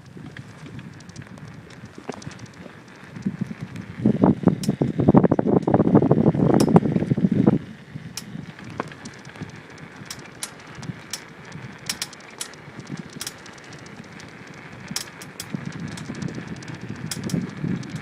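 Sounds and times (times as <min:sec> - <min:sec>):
bike frame rattling over bumps: 0:00.0 - 0:18.0.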